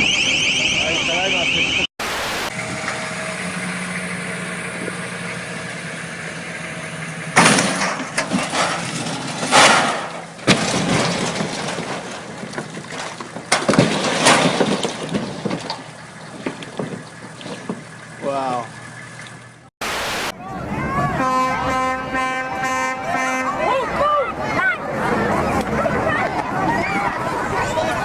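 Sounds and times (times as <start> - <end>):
boat engine humming: 0.0 - 8.2, 14.8 - 28.0.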